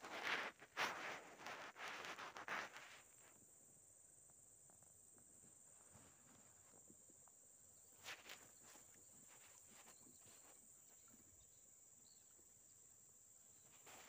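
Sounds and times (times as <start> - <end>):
rustling: 0.0 - 3.4, 4.3 - 11.5, 13.5 - 14.0.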